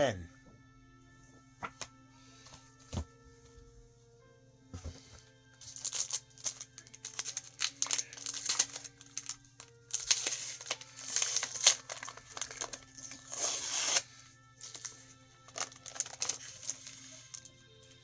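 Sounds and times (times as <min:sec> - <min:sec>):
packaging crinkling and rustling: 0:04.9 - 0:17.9.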